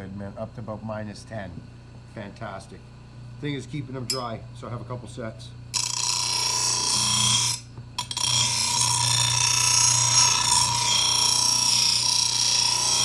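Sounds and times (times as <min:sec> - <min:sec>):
angle grinder grinding steel: 0:05.8 - 0:13.0.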